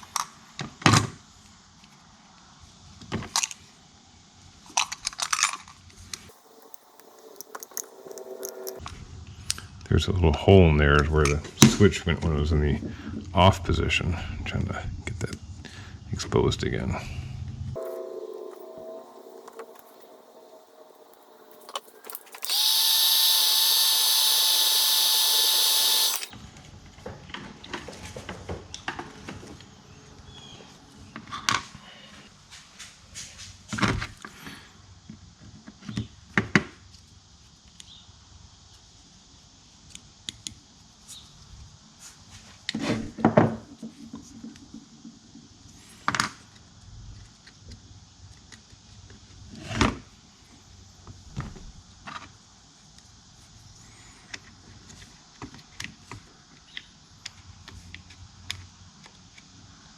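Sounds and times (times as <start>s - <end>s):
rotary tool whining: 6.3s - 8.8s, 17.8s - 26.3s.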